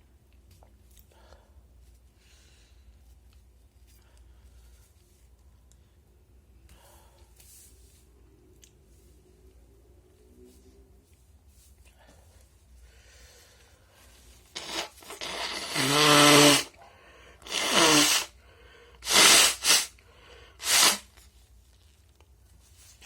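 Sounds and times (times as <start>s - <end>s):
person sneezing: 14.6s - 16.8s, 17.4s - 18.4s, 19.0s - 20.0s, 20.6s - 21.1s.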